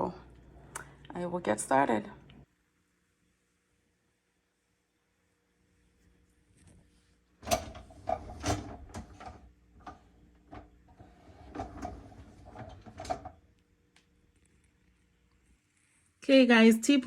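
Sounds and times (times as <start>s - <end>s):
dishwasher racks rattling: 7.4s - 13.4s
dishes clattering in dishwasher racks: 7.5s - 9.4s, 10.5s - 13.4s.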